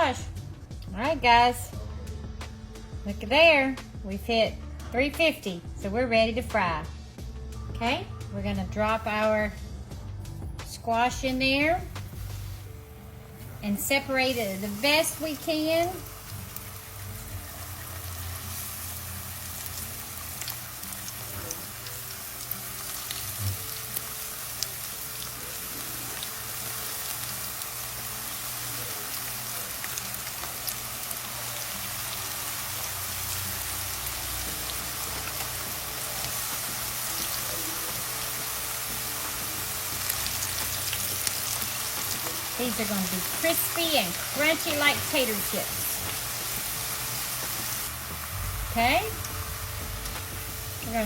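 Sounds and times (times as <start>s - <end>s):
vegetables deep-frying in oil: 10.8s - 51.0s.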